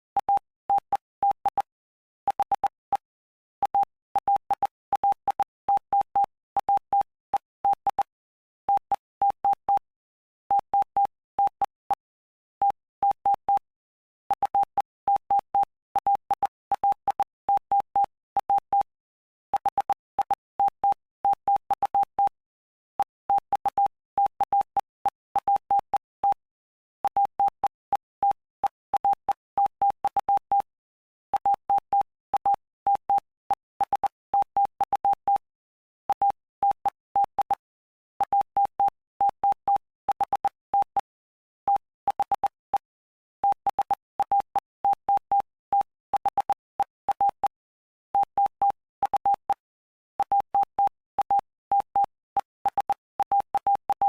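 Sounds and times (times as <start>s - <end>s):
morse code beeps: 19.6s - 22.4s, 31.4s - 35.5s, 36.1s - 41.1s, 41.7s - 47.6s, 48.2s - 49.6s, 50.2s - 54.0s.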